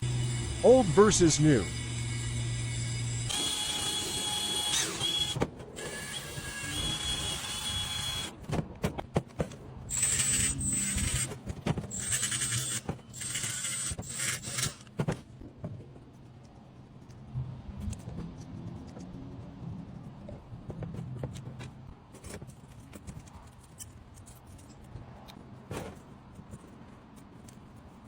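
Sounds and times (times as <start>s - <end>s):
power tool whining: 0.0s - 8.3s.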